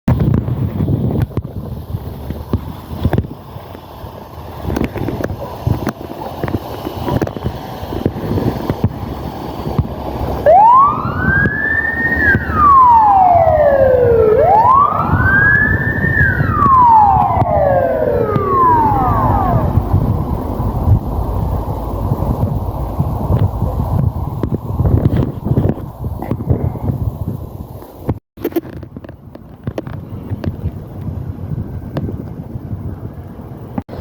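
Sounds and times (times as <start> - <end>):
low rumble: 7.4 - 27.6
electronic wail siren: 10.4 - 20.5.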